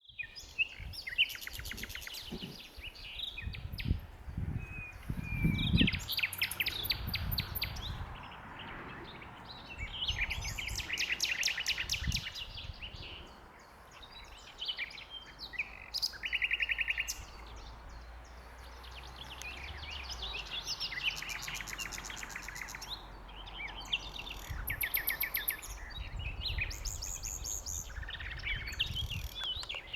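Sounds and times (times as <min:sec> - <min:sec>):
nightingale singing: 0:00.0 - 0:29.9.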